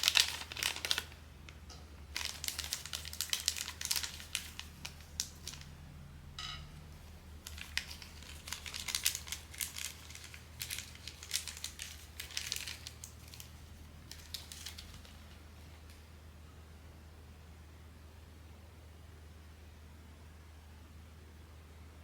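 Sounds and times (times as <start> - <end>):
packaging crinkling and rustling: 0.0 - 1.2, 2.1 - 5.7, 7.0 - 16.0.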